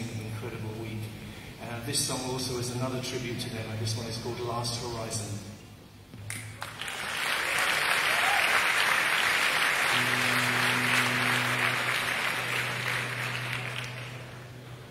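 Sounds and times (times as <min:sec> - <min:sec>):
audience applauding: 0:06.3 - 0:14.9
low held note: 0:09.9 - 0:14.9.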